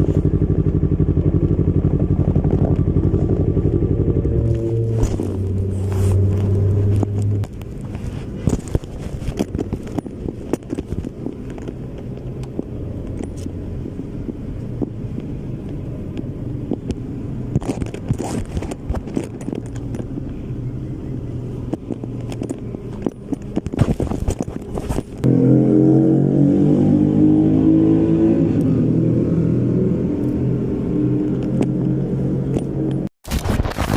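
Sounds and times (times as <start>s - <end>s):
motorcycle engine running: 0.0s - 33.1s
clicks and crackles: 4.5s - 13.5s, 14.2s - 20.4s, 21.7s - 25.3s, 32.5s - 33.9s.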